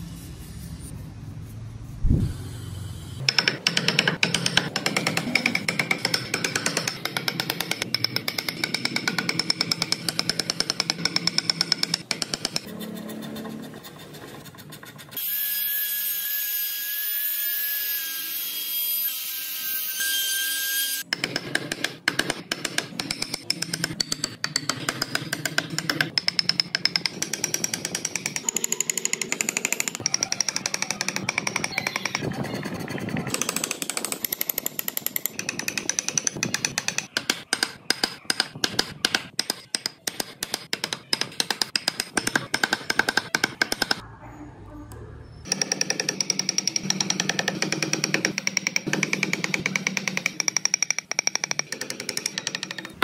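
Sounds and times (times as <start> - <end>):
tool chattering on wood: 3.2 - 12.7, 21.1 - 44.0, 45.4 - 53.0.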